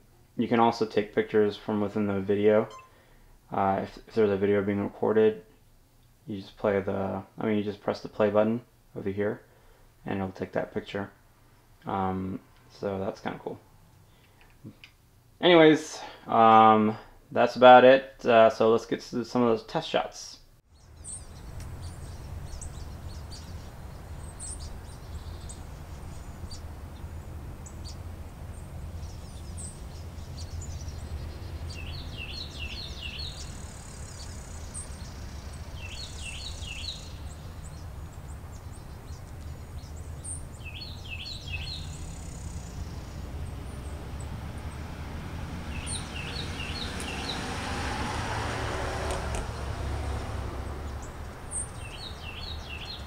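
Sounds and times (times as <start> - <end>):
low rumble of outdoor noise: 0.0 - 53.0
songbird singing high notes: 2.6 - 3.0, 29.0 - 44.8, 45.7 - 47.5.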